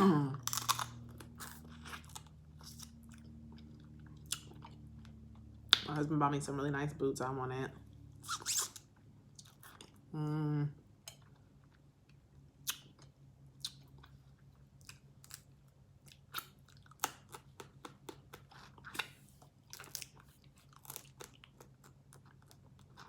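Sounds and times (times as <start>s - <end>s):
person chewing: 0.4s - 5.8s, 12.6s - 23.0s.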